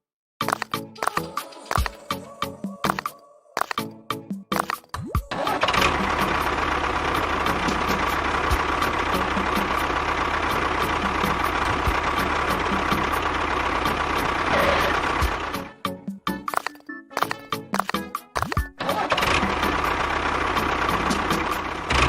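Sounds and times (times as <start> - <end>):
engine running steadily: 4.6 - 15.8, 16.5 - 22.0.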